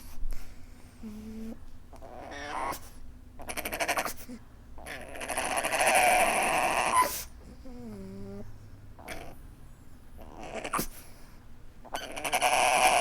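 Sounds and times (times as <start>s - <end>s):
dog snuffling breath: 0.0s - 1.6s, 6.8s - 11.5s
dog whining: 1.0s - 9.5s, 10.2s - 11.0s, 11.9s - 13.0s.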